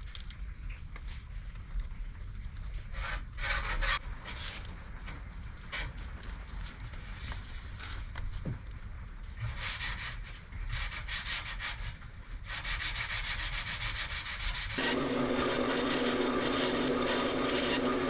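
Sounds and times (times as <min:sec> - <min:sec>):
hand sanding strokes: 0:09.4 - 0:18.0
power tool motor humming: 0:14.8 - 0:18.0.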